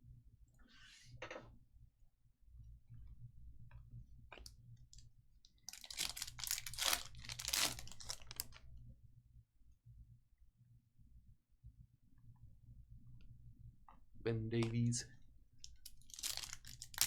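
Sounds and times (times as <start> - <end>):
foil wrapper ripping: 5.7 - 8.6, 15.6 - 17.0.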